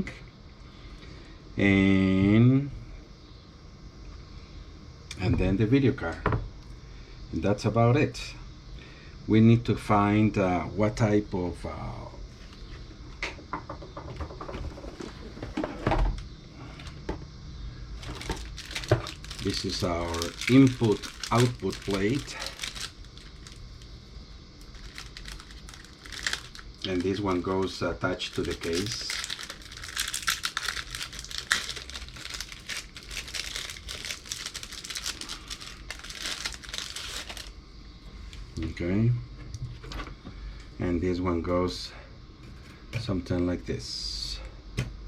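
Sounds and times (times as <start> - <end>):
hands rummaging through packaging: 18.0 - 23.6, 24.7 - 37.5.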